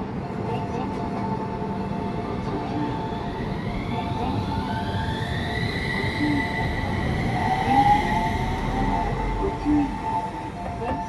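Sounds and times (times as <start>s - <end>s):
tram motors whining: 0.0s - 11.0s
level crossing warning alarm: 1.8s - 11.0s.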